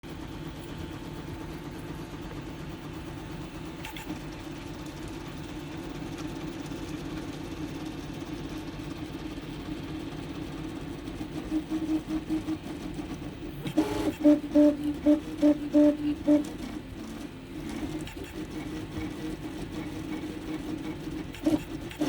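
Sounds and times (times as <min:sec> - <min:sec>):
stepper motor resonance hum: 0:11.2 - 0:22.0.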